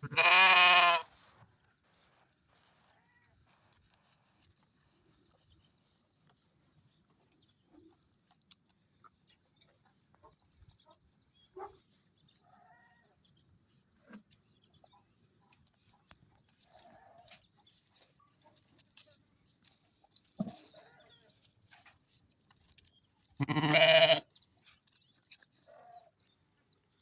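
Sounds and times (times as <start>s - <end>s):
animal calls: 23.4s - 24.2s.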